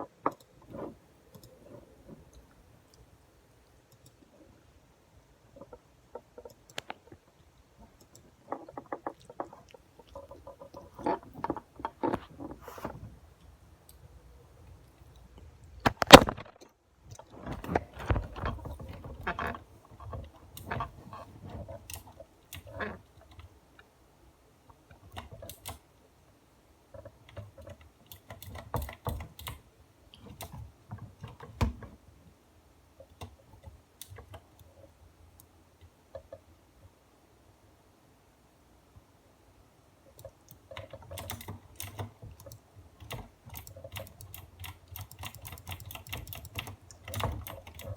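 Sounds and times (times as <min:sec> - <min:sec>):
mouse clicking: 0:08.0 - 0:08.3, 0:40.1 - 0:47.9
computer keyboard typing: 0:40.2 - 0:47.9.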